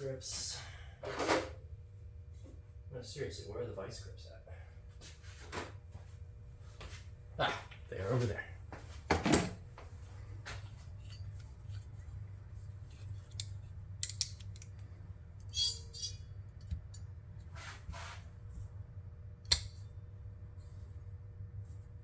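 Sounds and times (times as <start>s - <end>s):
low steady hum: 0.0s - 22.0s
locking pliers scraping on screw: 13.0s - 14.8s, 15.5s - 16.8s
light metal clicks: 13.3s - 14.9s.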